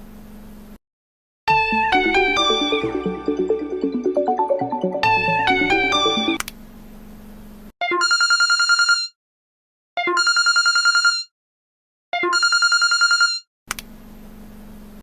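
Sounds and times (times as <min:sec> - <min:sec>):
telephone bell ringing: 0:07.8 - 0:09.2, 0:10.0 - 0:11.3, 0:12.2 - 0:13.5.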